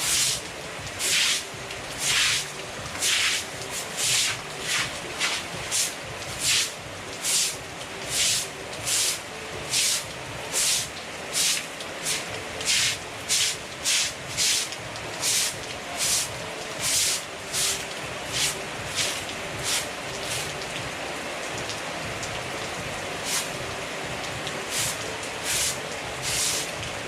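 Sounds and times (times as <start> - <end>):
broom sweeping water: 0.0 - 20.7, 23.2 - 23.6, 24.6 - 26.8
steady rain: 0.0 - 27.0.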